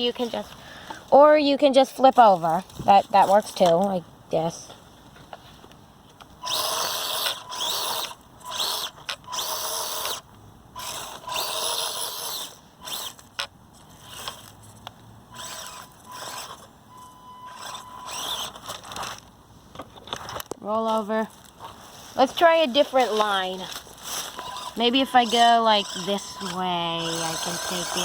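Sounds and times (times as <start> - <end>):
small electric motor whining: 6.4 - 19.2, 22.4 - 28.0.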